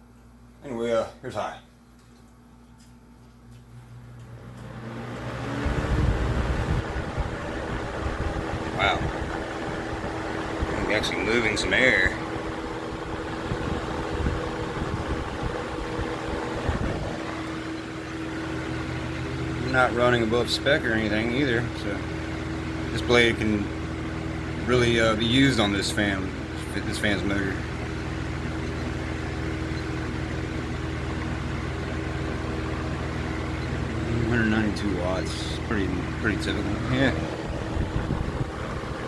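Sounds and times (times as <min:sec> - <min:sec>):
box fan motor hum: 0:00.0 - 0:39.0
air buffeting microphone: 0:05.6 - 0:17.6, 0:33.9 - 0:39.0.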